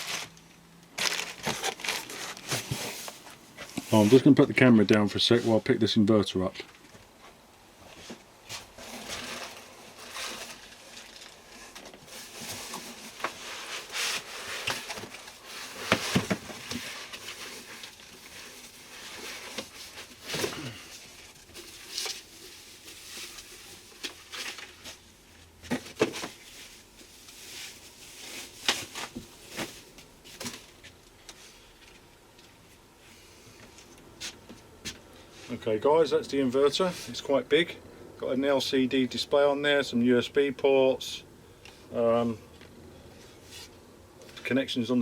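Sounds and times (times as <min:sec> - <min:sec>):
packaging rustling: 0:00.0 - 0:04.2, 0:08.6 - 0:31.0.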